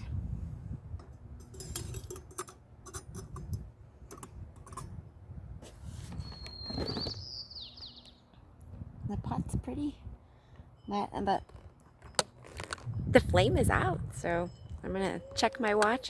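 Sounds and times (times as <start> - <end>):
wind rumbling on microphone: 0.0 - 8.0, 8.6 - 10.2, 12.6 - 16.0
bird whistle falling in pitch: 6.2 - 8.0.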